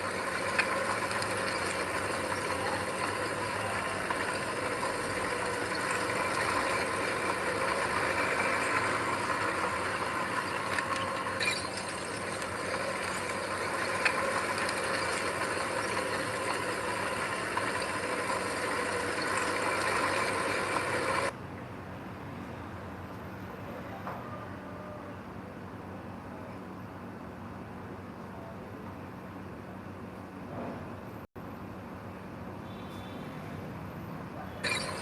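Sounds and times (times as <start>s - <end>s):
diesel machinery running: 0.0s - 21.3s.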